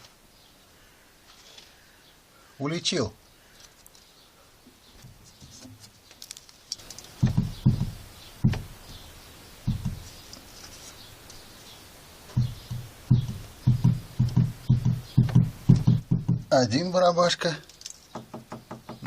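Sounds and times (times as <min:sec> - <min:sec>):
faint bird chirps: 0:06.8 - 0:16.3
dull knocks and thumps: 0:07.0 - 0:09.0, 0:09.6 - 0:10.2, 0:12.3 - 0:16.6, 0:18.1 - 0:19.0.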